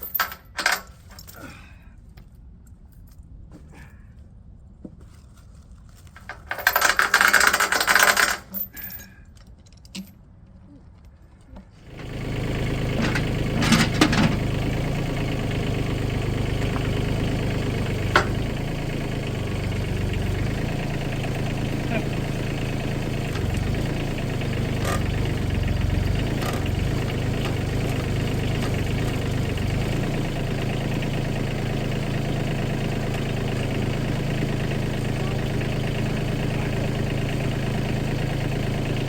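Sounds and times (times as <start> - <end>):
engine starting and idling: 0.0 - 0.9, 6.3 - 8.9, 11.8 - 39.0
chain clinking and rattling: 0.0 - 1.5, 6.2 - 10.3.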